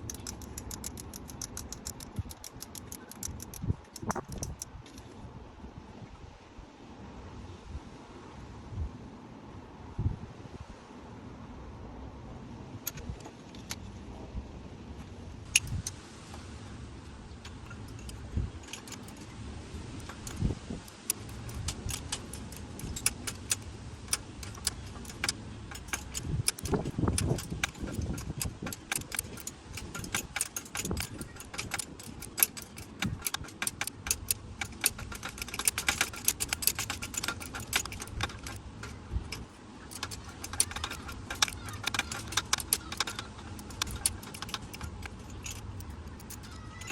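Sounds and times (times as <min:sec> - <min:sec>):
metallic clicks of hand tools: 0:00.0 - 0:05.1, 0:12.9 - 0:13.8, 0:15.5 - 0:16.0, 0:17.4 - 0:19.3, 0:20.0 - 0:46.9.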